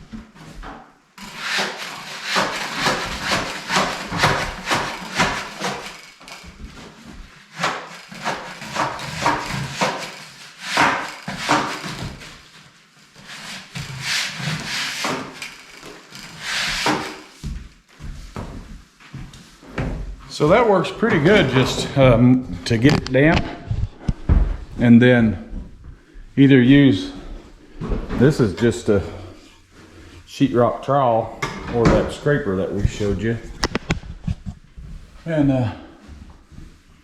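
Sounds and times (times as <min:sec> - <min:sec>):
metal blade scraping ceiling texture: 0:01.2 - 0:12.5, 0:13.2 - 0:17.4.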